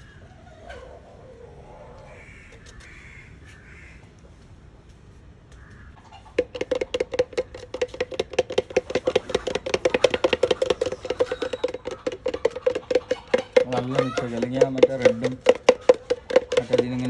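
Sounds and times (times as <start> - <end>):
paint being stirred: 6.2 - 17.0
stirrer clinking against container: 6.3 - 17.0.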